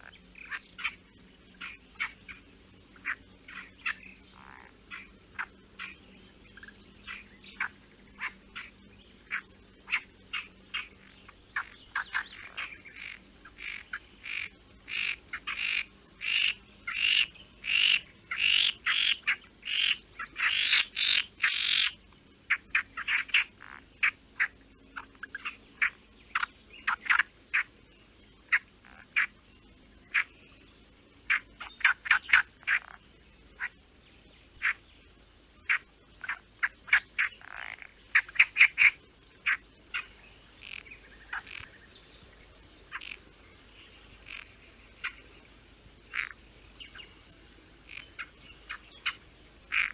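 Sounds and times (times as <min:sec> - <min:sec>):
bird calling: 0:00.0 - 0:33.8, 0:34.5 - 0:35.0, 0:35.6 - 0:49.9.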